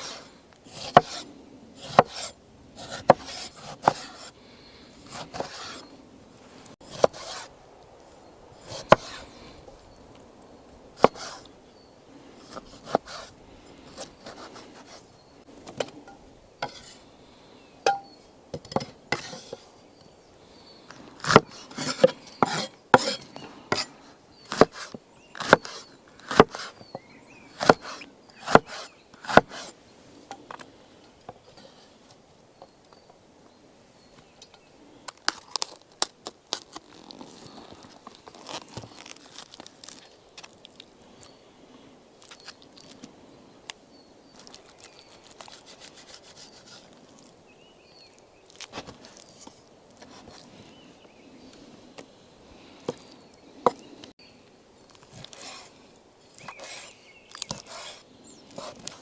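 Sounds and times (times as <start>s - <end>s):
knocks of wood being handled: 0.7s - 1.2s, 1.8s - 4.3s, 17.8s - 19.7s, 21.2s - 23.9s, 24.5s - 29.7s
axe chopping wood: 0.8s - 1.2s, 1.8s - 4.2s, 6.8s - 7.4s, 8.7s - 9.2s, 24.5s - 26.7s, 27.6s - 29.7s.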